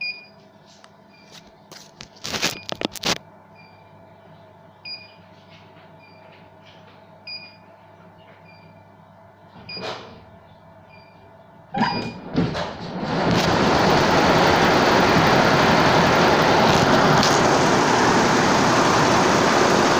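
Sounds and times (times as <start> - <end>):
embroidery machine running: 12.8 - 19.9.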